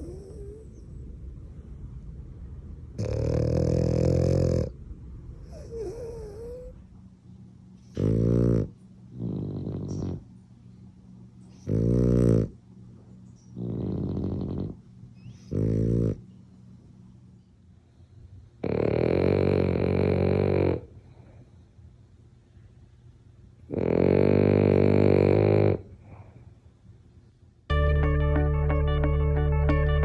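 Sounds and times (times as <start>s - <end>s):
dog snoring: 0.0s - 0.9s, 3.0s - 4.8s, 5.4s - 6.8s, 7.9s - 10.3s, 11.6s - 12.6s, 13.5s - 16.2s, 18.6s - 21.4s, 23.7s - 26.4s.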